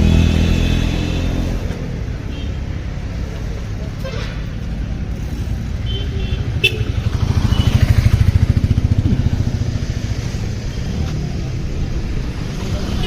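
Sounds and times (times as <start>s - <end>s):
motorcycle engine running: 6.6s - 10.5s.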